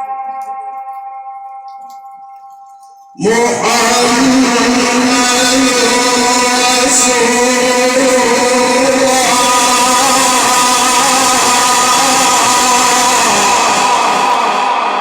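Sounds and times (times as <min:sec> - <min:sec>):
man chanting recitation: 0:03.2 - 0:15.0.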